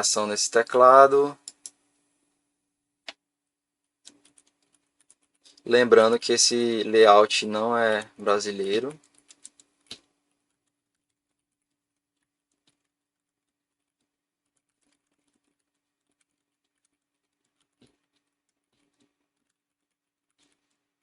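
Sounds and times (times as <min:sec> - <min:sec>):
keyboard typing: 0:01.4 - 0:01.8, 0:04.0 - 0:06.2, 0:07.8 - 0:21.0.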